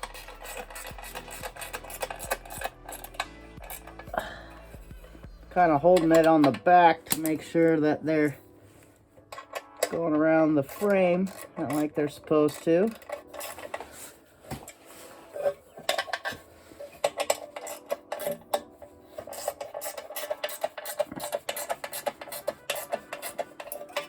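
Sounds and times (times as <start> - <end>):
hand ratchet clicking: 0.0 - 4.9, 5.6 - 7.4, 9.3 - 13.8, 17.0 - 24.0
metal tools clinking: 0.0 - 8.4, 9.2 - 24.0.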